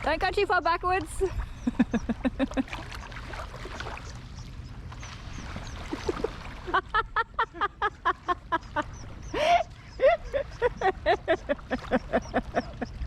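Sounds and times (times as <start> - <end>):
ducks quacking: 7.9 - 13.0.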